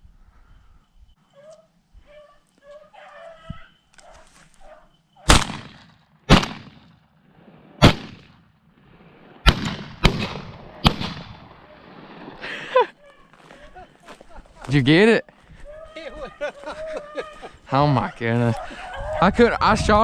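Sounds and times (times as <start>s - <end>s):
dogs baying faintly: 1.2s - 5.3s, 12.8s - 14.7s, 15.4s - 19.8s
gunshots with short echo: 5.3s - 6.9s, 7.8s - 8.4s, 9.4s - 12.4s.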